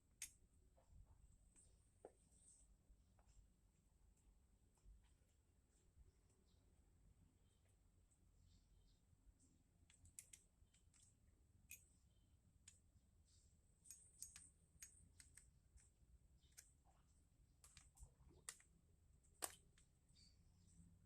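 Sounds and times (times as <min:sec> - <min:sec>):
light clicks of small parts: 0:00.1 - 0:02.2, 0:07.6 - 0:21.0.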